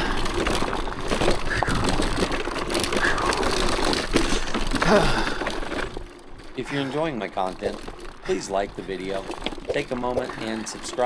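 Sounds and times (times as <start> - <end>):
tyres crunching over stones: 0.0 - 11.0
rider vocal sound: 6.5 - 11.0.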